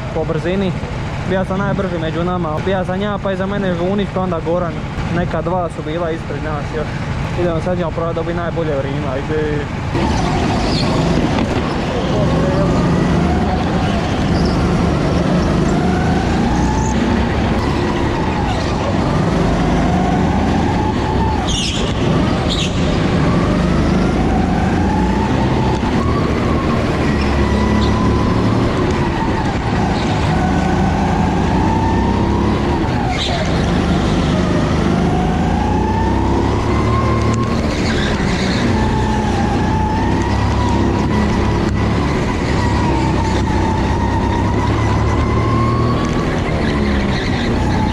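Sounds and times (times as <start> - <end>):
go-kart engine at full throttle: 0.0 - 47.9
high squeal: 10.0 - 17.0.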